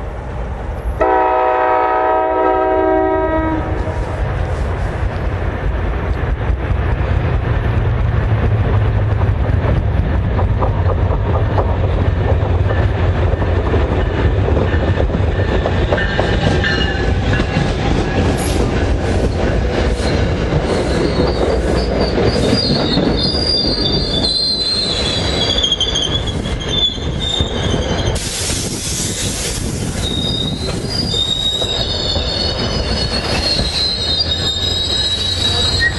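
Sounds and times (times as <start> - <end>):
train rumbling: 0.0 - 35.9
train wheel clicks: 5.9 - 35.9
train wheels squealing on rails: 13.9 - 35.9.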